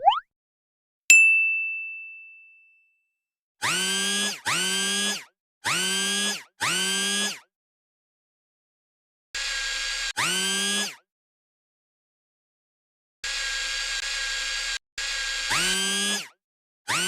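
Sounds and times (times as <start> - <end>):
bright ding: 1.1 - 2.8.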